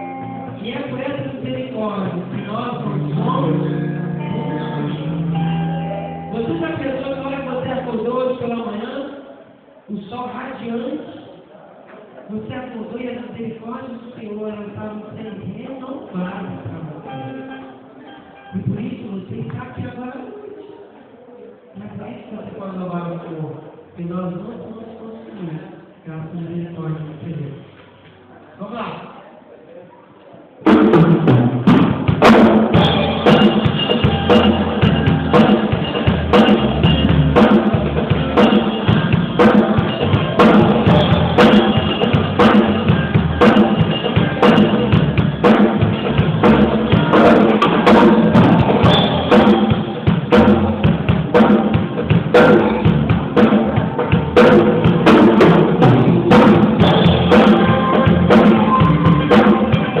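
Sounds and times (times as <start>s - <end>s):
worship band music: 0.0s - 8.6s, 30.7s - 60.0s
drum kit kick and snare: 30.7s - 60.0s.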